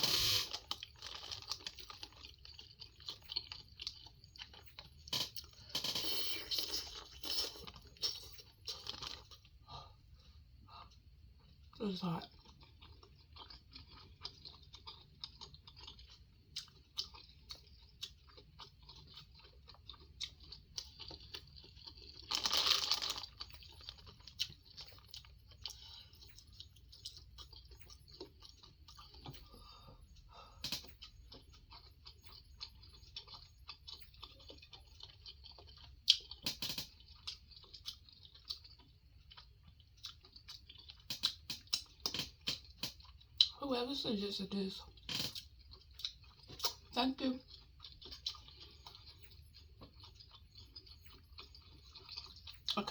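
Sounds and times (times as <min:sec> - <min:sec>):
chewing and mouth sounds: 0:00.0 - 0:43.6, 0:44.5 - 0:52.9.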